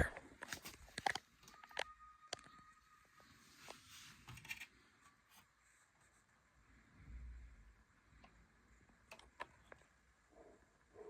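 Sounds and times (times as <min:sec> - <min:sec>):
faint thin high tone: 0:01.5 - 0:03.6.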